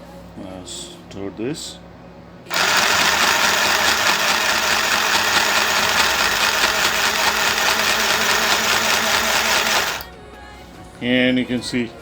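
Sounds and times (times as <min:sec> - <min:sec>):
sewing machine motor whirring: 0:02.5 - 0:10.1
sewing needle chattering: 0:02.5 - 0:10.1.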